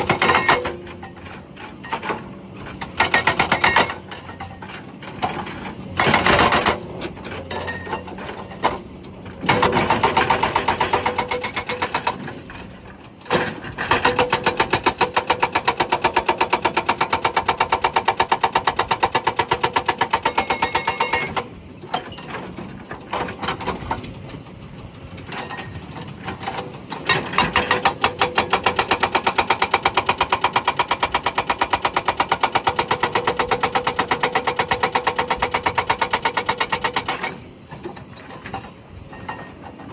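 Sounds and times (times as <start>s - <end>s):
hydraulic rock breaker hammering: 0.0s - 24.5s, 25.2s - 39.9s
excavator engine running: 0.0s - 39.9s.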